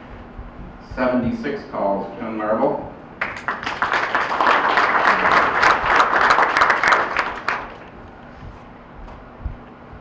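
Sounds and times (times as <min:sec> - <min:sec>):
audience applauding: 0:03.2 - 0:08.0.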